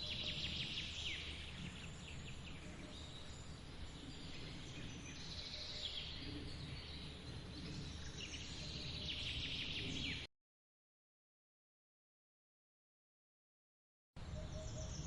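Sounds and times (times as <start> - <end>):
birds chirping: 0.0 - 10.3.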